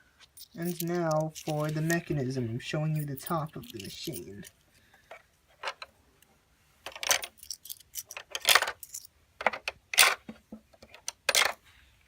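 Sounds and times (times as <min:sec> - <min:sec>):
coins clinking and rattling: 0:00.2 - 0:02.2, 0:02.9 - 0:04.6, 0:06.9 - 0:09.1, 0:11.3 - 0:11.6.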